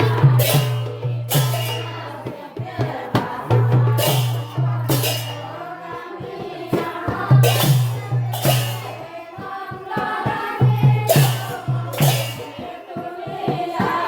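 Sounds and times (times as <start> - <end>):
low drum beats: 0.0 - 5.6
sharp percussive hits: 0.0 - 12.8
group of voices singing: 0.0 - 14.0.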